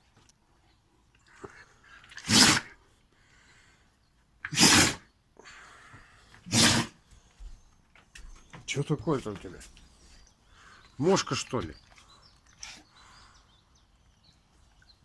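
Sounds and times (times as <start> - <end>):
dog sneezing: 2.1 - 2.8, 4.5 - 5.1, 6.5 - 7.0.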